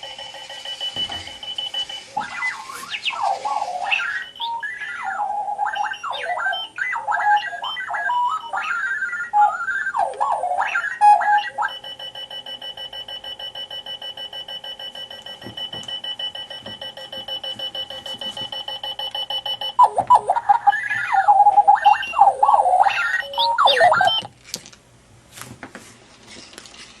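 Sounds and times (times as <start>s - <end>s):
alarm clock beeping: 0.0s - 24.3s
alarm clock warbling chirps: 0.1s - 14.8s, 18.5s - 24.3s.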